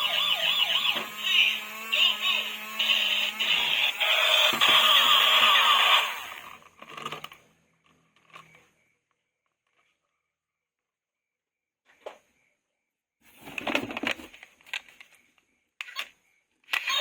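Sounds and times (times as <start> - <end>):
toy electronic sound effect: 0.0 - 6.6, 16.7 - 17.0.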